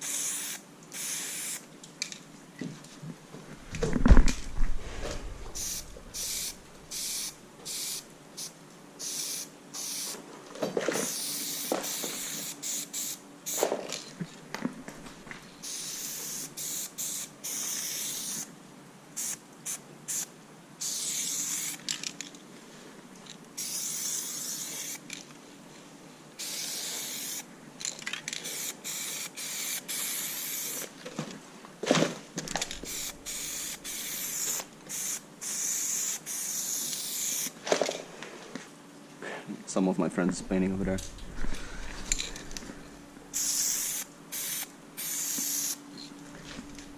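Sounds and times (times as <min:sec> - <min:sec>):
spray paint can hissing: 0:00.0 - 0:01.6, 0:05.5 - 0:10.2, 0:11.0 - 0:13.6, 0:15.6 - 0:18.5, 0:19.2 - 0:21.8, 0:23.6 - 0:25.0, 0:26.4 - 0:27.5, 0:28.4 - 0:30.9, 0:32.7 - 0:37.6, 0:43.3 - 0:45.8.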